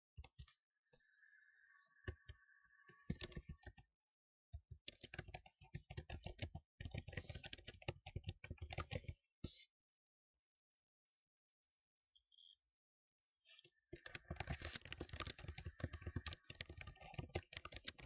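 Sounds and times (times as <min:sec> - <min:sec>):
keyboard typing: 0:03.0 - 0:03.8, 0:04.9 - 0:09.2, 0:14.0 - 0:18.0.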